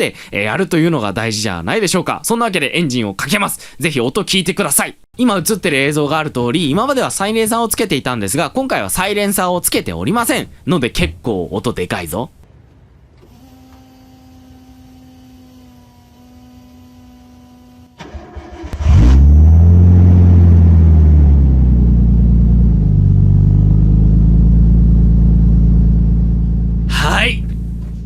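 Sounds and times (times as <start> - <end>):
car engine cranking and idling: 18.0 - 28.0.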